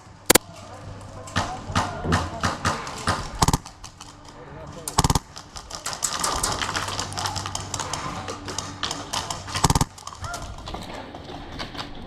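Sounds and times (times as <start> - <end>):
airsoft guns firing: 1.3 - 3.9, 5.0 - 7.4, 8.8 - 10.4.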